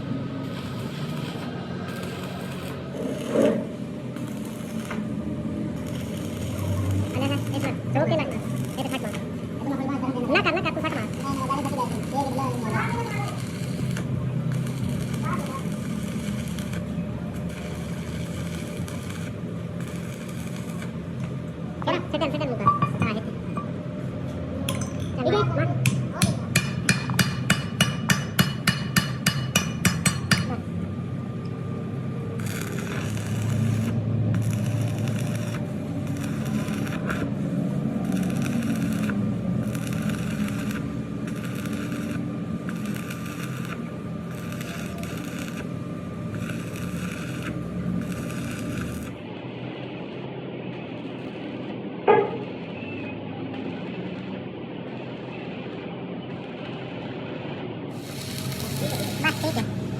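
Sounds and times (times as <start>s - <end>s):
machine hum: 0.0s - 26.2s, 29.2s - 59.9s
bursts of hissing: 57.9s - 59.9s.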